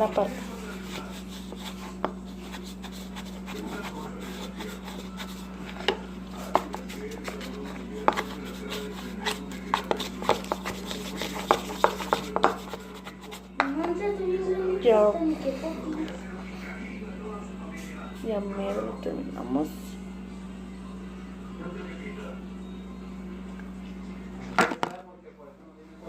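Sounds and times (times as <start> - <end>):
spoon scraping in a bowl: 0.0 - 13.7
steady low hum: 0.0 - 26.0.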